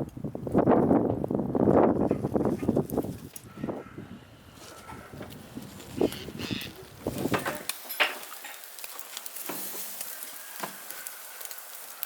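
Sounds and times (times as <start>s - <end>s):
faint hiss: 7.1s - 12.0s
cooking utensils and dishes clinking: 7.2s - 9.9s.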